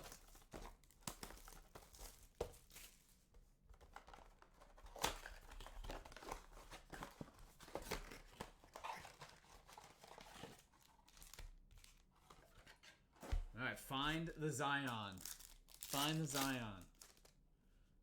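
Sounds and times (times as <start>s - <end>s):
wrapping tearing and crinkling: 0.0s - 3.2s, 3.9s - 12.1s, 15.1s - 17.4s.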